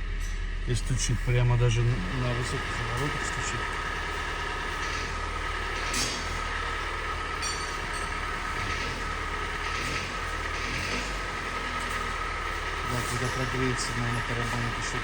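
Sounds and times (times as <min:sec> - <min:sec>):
engine running with hard knock: 0:00.0 - 0:15.0.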